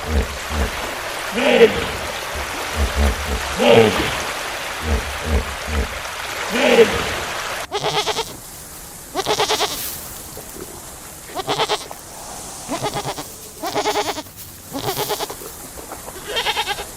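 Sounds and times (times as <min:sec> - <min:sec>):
farm animal bleating: 0:07.7 - 0:08.4, 0:09.1 - 0:10.0, 0:11.3 - 0:12.1, 0:12.7 - 0:15.4, 0:16.2 - 0:16.9.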